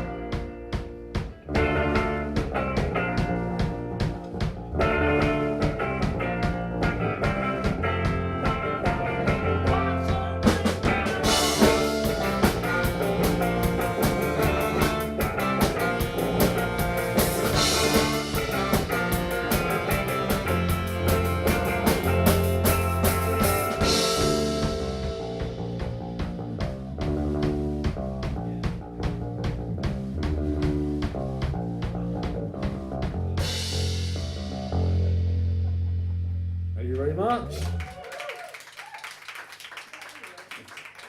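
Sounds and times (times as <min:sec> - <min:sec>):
rock band playing: 0:00.0 - 0:37.9.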